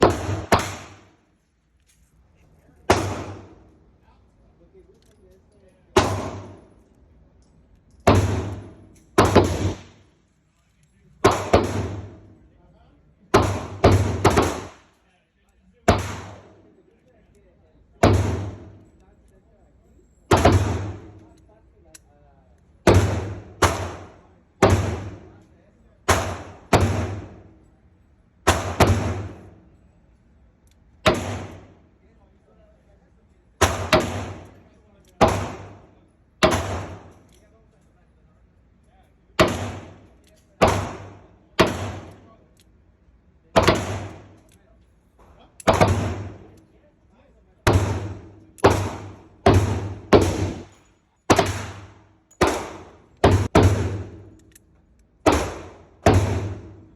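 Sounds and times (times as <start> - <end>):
revolver shots echoing: 0.0 - 1.1, 31.1 - 31.7, 40.6 - 42.3, 45.6 - 46.6, 47.7 - 50.7, 51.3 - 54.3.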